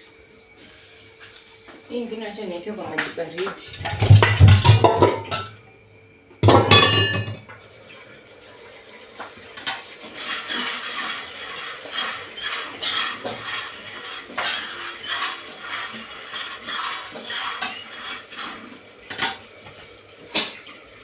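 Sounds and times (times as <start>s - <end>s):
dishes clinking and rattling: 3.6s - 5.6s, 6.4s - 7.6s, 9.2s - 20.7s
metal pots clattering: 3.6s - 5.6s, 6.4s - 7.6s, 9.4s - 20.8s.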